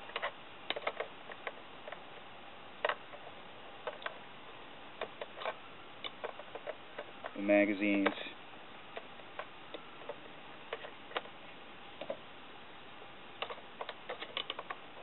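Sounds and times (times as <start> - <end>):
metal parts clicking and knocking: 0.1 - 2.0, 13.4 - 15.0.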